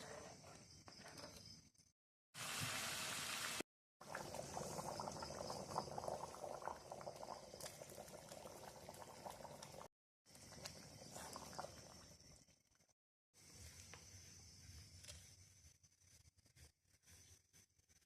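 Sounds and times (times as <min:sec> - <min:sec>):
curry bubbling in a pot: 0:04.0 - 0:12.9.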